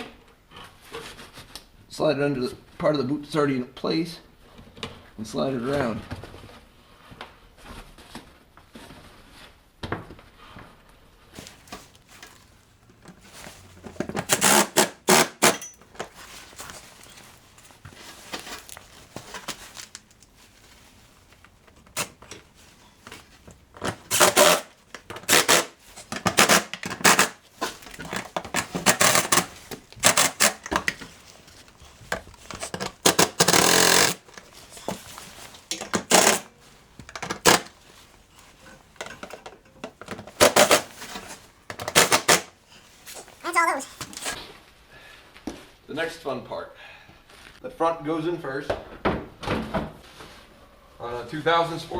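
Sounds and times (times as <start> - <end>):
tool and part handling: 11.4 - 44.4
wrench scraping under rubber boot: 11.4 - 44.4.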